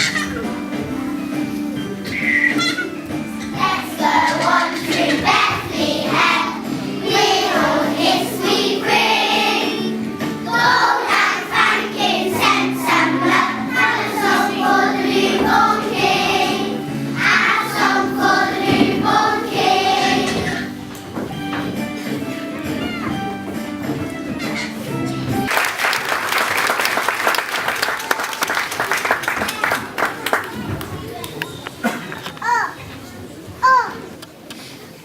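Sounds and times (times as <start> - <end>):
choir singing: 3.6 - 20.6.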